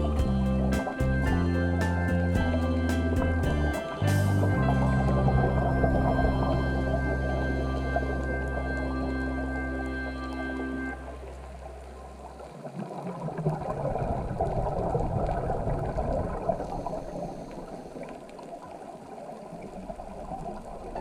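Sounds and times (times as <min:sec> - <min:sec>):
underwater bubbling and gurgling: 0:04.4 - 0:21.0.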